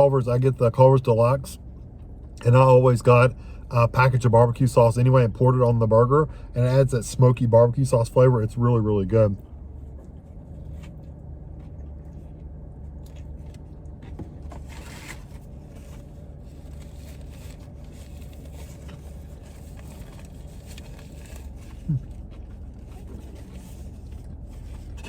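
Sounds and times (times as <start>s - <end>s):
car engine idling: 0.0s - 25.0s
quiet chewing: 9.8s - 14.4s
wrapper rustling: 14.6s - 22.0s.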